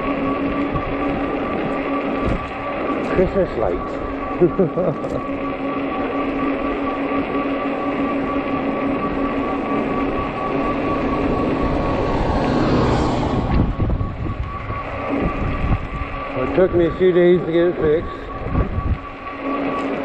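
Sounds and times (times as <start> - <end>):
wind noise on microphone: 0.0 - 2.7, 10.2 - 17.1, 17.8 - 19.3
electric motor whine: 0.0 - 20.0
tire rumble: 0.0 - 20.0.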